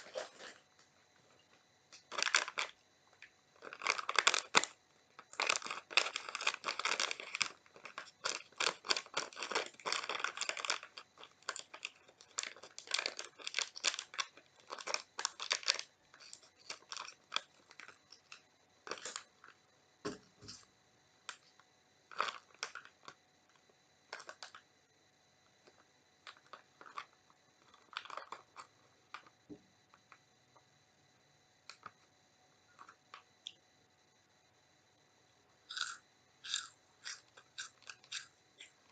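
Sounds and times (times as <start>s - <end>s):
child chewing crunchy snacks: 0.0s - 0.7s, 1.9s - 19.6s, 21.3s - 24.6s, 25.6s - 29.3s, 35.6s - 38.9s.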